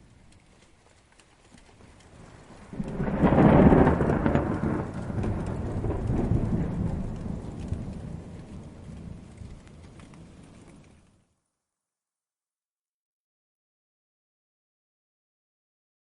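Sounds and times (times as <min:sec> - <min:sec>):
light rain: 0:00.0 - 0:11.6
distant thunder rumble: 0:02.1 - 0:11.0.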